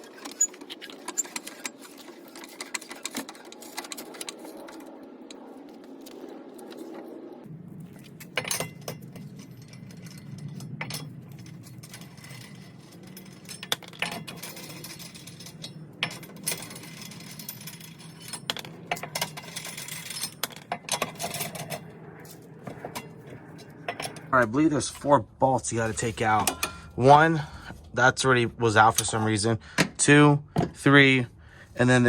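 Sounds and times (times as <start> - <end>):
metal tools clinking: 0.0 - 5.0, 8.2 - 25.0, 25.9 - 27.0
steady low hum: 0.0 - 32.0.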